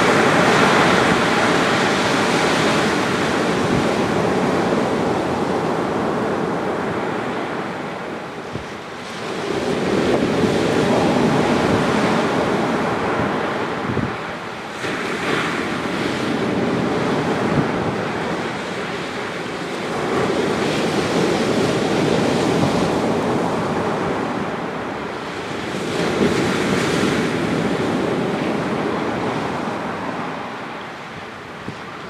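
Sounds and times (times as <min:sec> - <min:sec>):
waves breaking on sandy beach: 0:00.0 - 0:32.0.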